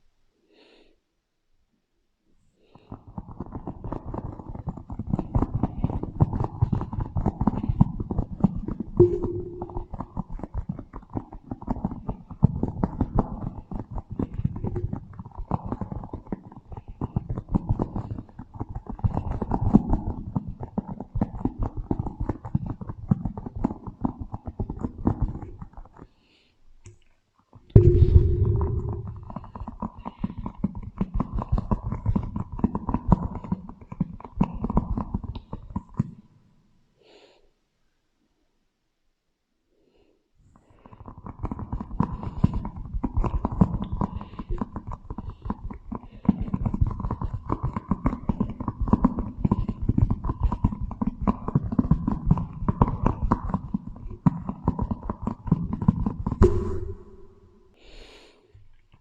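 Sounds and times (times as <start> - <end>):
heavy low rumble: 27.8 - 29.3.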